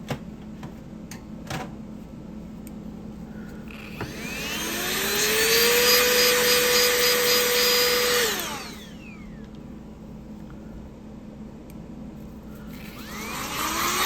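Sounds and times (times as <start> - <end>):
small electric motor whining: 3.7 - 9.4, 12.7 - 14.0.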